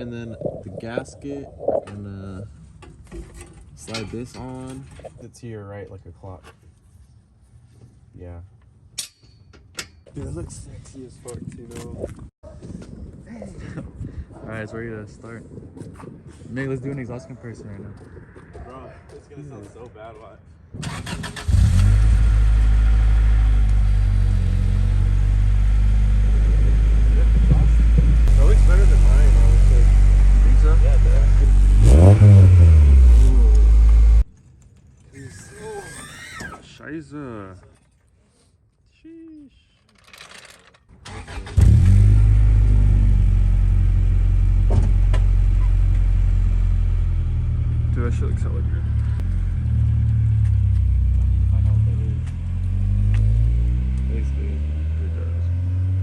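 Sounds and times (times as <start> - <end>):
car engine starting and idling: 20.8 - 34.3, 41.0 - 56.0.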